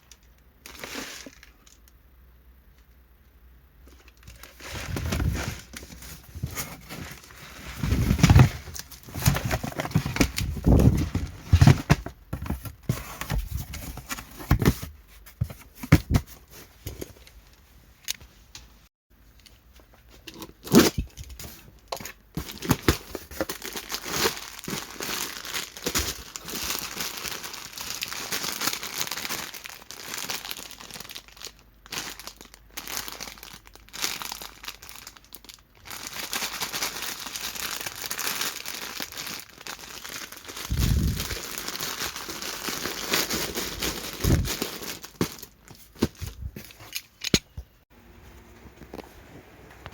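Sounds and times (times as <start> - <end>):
plastic packaging crinkling and tearing: 3.9 - 14.8, 20.3 - 47.2.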